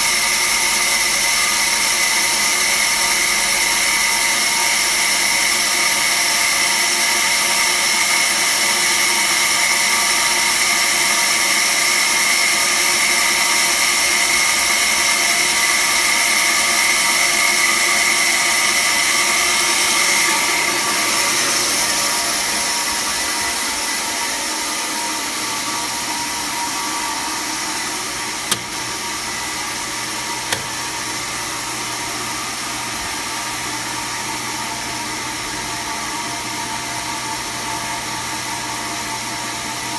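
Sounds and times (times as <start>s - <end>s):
band saw whining: 15.8s - 34.6s
sharp clicks: 28.5s - 28.9s.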